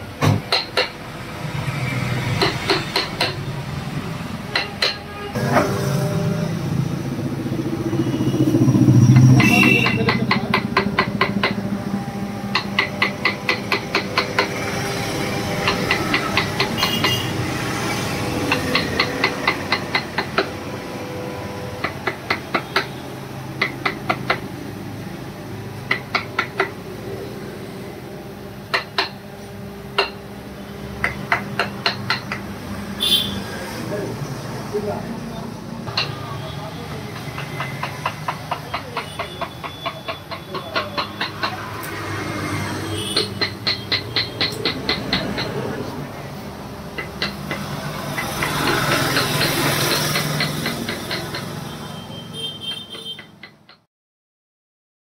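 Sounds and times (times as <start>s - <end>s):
mallet tapping chisel on wood: 0.2s - 1.0s, 2.4s - 3.5s, 4.5s - 5.0s, 9.2s - 11.6s, 12.5s - 14.8s, 15.4s - 17.4s, 18.3s - 20.6s, 21.8s - 23.0s, 23.6s - 24.5s, 25.9s - 26.8s, 28.7s - 29.2s, 29.9s - 30.2s, 31.0s - 32.5s, 35.9s - 36.2s, 37.1s - 41.9s, 43.0s - 45.8s, 46.9s - 51.8s, 52.7s - 53.9s.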